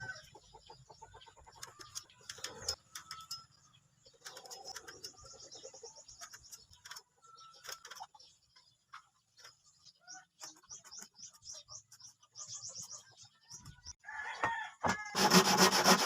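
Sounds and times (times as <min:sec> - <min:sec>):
bird chirps and trills: 0:00.0 - 0:14.0.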